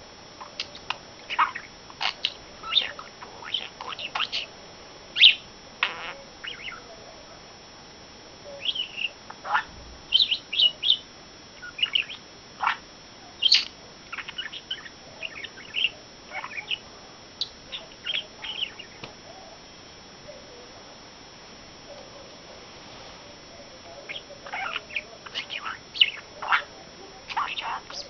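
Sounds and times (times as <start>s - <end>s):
budgerigar chirping and clicking: 0.4s - 4.5s, 5.2s - 6.8s, 8.6s - 11.0s, 11.6s - 12.8s, 13.4s - 16.8s, 17.4s - 19.1s, 24.1s - 26.7s, 27.3s - 28.0s.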